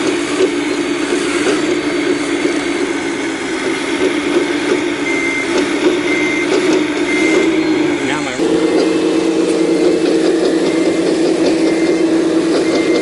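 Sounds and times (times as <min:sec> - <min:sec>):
excavator diesel engine running: 0:00.0 - 0:13.0
high warning alarm beeps: 0:03.8 - 0:13.0.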